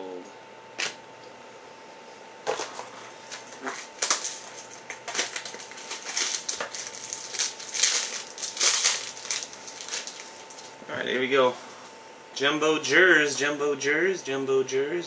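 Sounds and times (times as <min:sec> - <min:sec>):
trading cards and wrapper rustling: 0:03.6 - 0:10.7.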